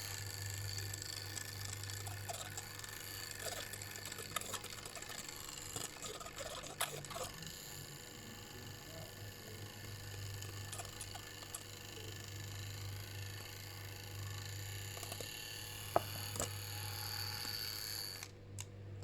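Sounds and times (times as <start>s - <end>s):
steady low hum: 0.0s - 19.0s
slime stirred in a bowl: 3.4s - 7.3s.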